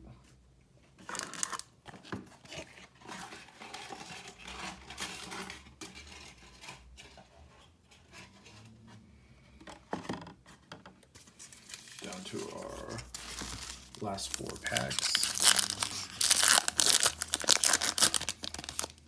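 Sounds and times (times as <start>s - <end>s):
wrapper tearing: 1.0s - 1.7s, 2.4s - 6.9s, 11.2s - 19.0s
wrapper crinkling and rustling: 1.0s - 7.6s, 11.2s - 19.0s.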